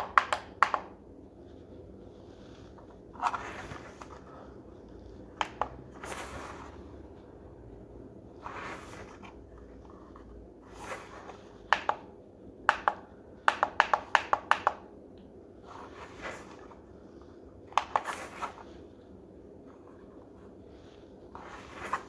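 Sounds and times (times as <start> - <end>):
soft handling rustles: 1.0 - 12.2, 15.2 - 22.0
alarm clock buttons clicking: 12.7 - 14.9.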